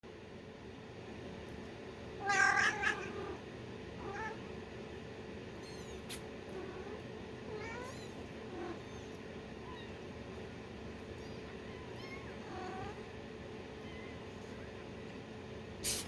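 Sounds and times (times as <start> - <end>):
kittens mewing: 2.2 - 4.5, 5.6 - 10.1.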